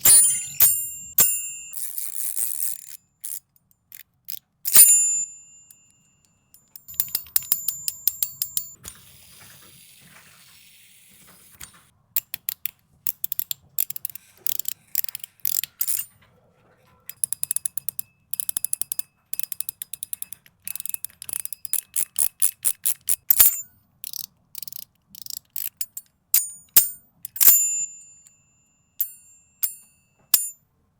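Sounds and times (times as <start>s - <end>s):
metallic snap ringing: 0.0s - 1.8s, 29.0s - 30.6s
metal fidget toy clicking: 0.0s - 5.8s, 6.5s - 8.8s, 12.2s - 16.1s, 17.1s - 27.8s, 29.0s - 30.6s.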